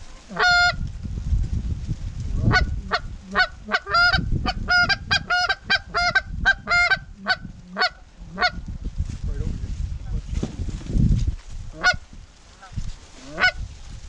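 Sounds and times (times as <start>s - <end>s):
low rumble of wind: 0.0s - 14.0s
goose honking: 0.1s - 0.8s, 2.5s - 8.6s, 11.7s - 12.0s, 12.6s - 13.6s.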